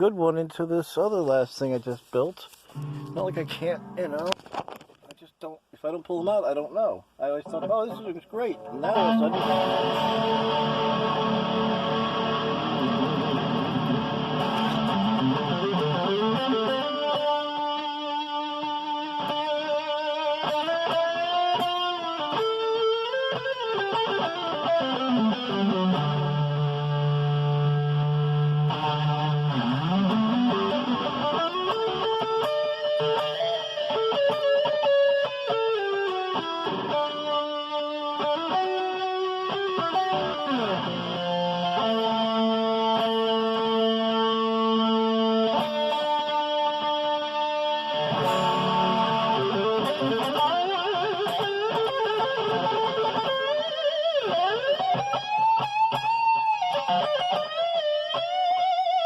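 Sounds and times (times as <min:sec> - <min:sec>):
distorted electric guitar: 0:02.6 - 0:05.0, 0:07.4 - 0:59.0.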